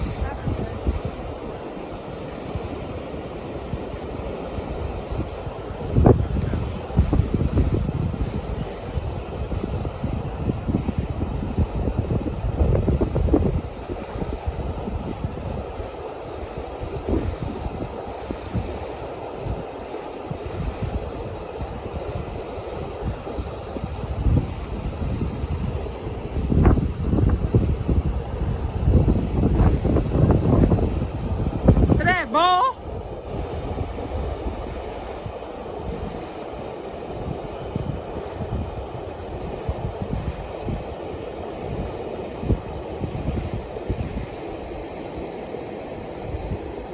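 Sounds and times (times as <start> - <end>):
frozen river rumble: 0.0 - 46.9
water rushing under ice: 0.0 - 46.9
wind buffeting microphone: 0.0 - 46.9.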